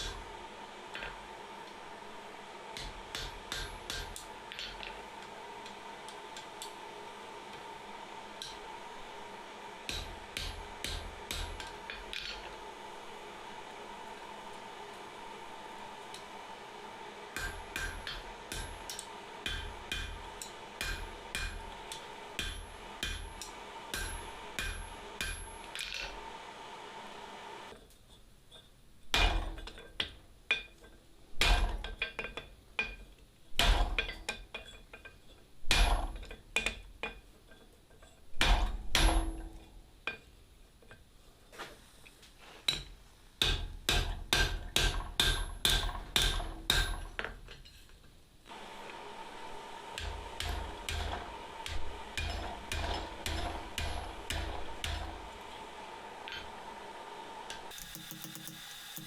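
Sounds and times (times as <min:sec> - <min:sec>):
hammer striking steel on anvil: 0:02.8 - 0:06.8, 0:09.8 - 0:12.4, 0:17.3 - 0:26.0, 0:42.7 - 0:47.2.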